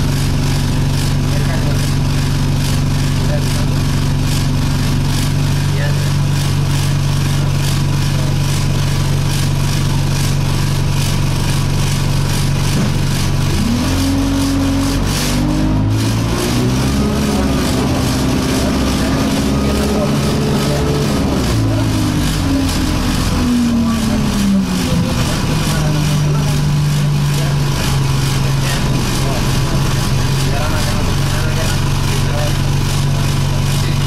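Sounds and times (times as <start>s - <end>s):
vibration rattle: 0.0s - 34.0s
bus engine idling and pulling away: 8.9s - 34.0s.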